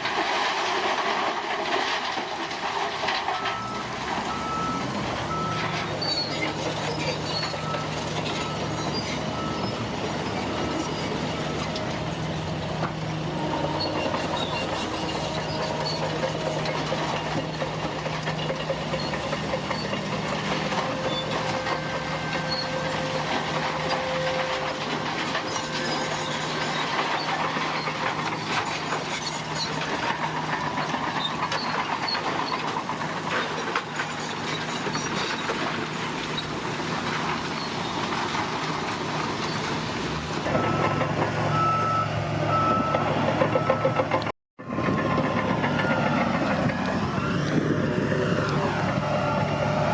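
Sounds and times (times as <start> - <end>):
bulldozer diesel engine: 0.0 - 49.9
steel tracks clanking: 0.0 - 49.9
reversing alarm beeping: 40.6 - 46.3.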